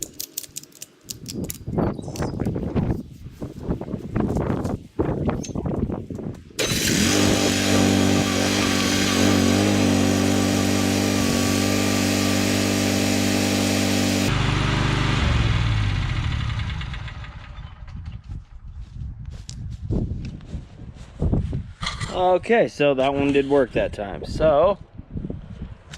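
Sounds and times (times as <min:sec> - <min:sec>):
skid steer engine at high throttle: 0:06.6 - 0:18.2.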